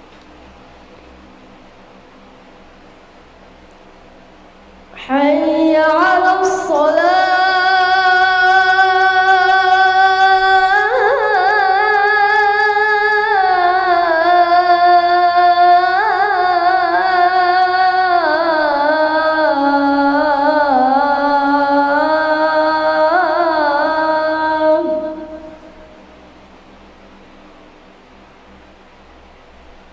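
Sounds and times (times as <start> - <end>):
child singing call to prayer: 5.0 - 26.0.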